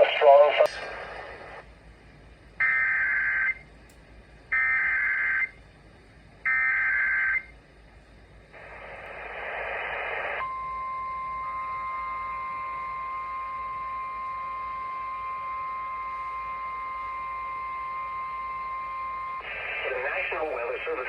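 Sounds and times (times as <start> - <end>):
radio hiss: 0.0 - 1.7, 8.5 - 10.4, 19.4 - 21.0
steady warning alarm tone: 2.6 - 3.7, 4.5 - 5.6, 6.4 - 7.6, 10.4 - 20.6.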